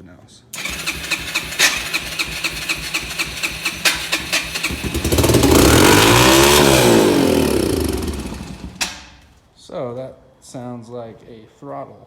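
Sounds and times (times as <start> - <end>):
electric starter cranking: 0.6 - 9.3
motorcycle engine revving: 0.6 - 9.3.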